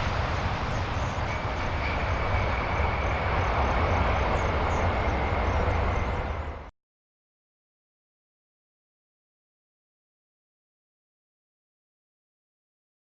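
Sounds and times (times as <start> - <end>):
aircraft engines rumbling: 0.0 - 6.7
faint high whine: 0.0 - 6.7.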